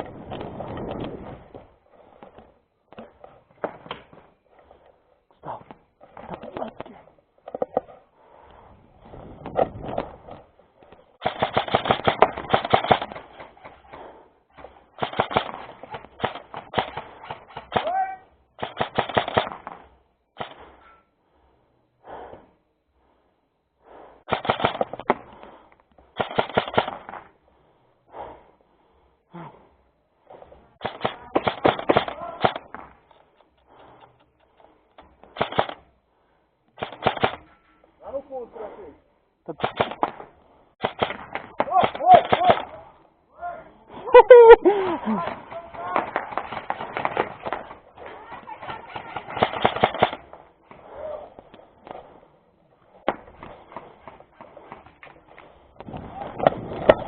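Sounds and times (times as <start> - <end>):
airsoft guns full-auto fire: 11.2 - 13.8, 15.0 - 18.0, 18.6 - 19.8, 20.4 - 20.6, 24.3 - 25.1, 26.2 - 27.2, 30.8 - 32.9, 35.3 - 35.8, 36.8 - 37.5, 39.6 - 40.2, 40.8 - 42.8, 45.3 - 50.4.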